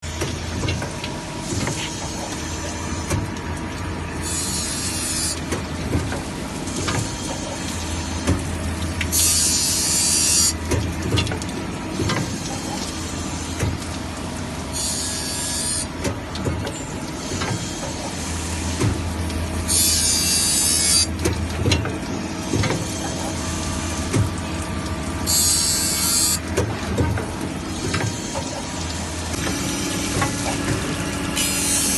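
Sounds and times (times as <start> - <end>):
grinding machine motor hum: 29.0 - 31.9.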